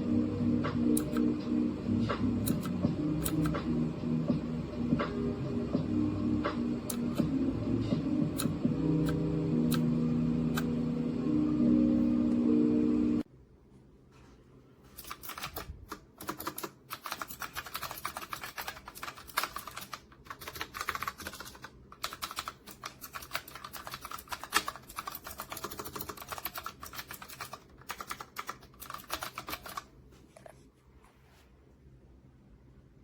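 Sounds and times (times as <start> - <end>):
mechanical keyboard typing: 0.9 - 1.3, 2.4 - 3.6, 6.8 - 7.3, 8.3 - 10.8, 15.0 - 29.9.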